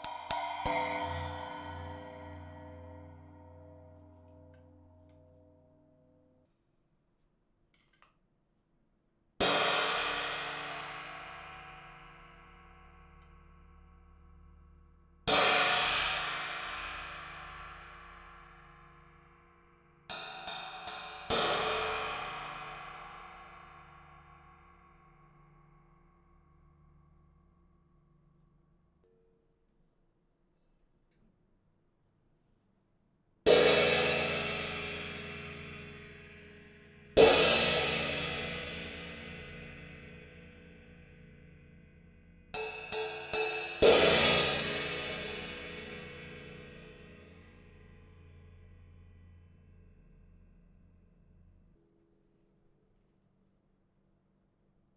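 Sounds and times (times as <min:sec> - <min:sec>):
cymbal struck and ringing: 0:00.0 - 0:05.5, 0:42.6 - 0:47.0.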